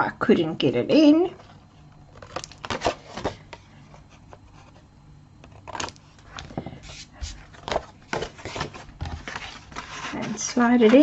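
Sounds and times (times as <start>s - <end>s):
paper rustling: 5.5s - 11.0s.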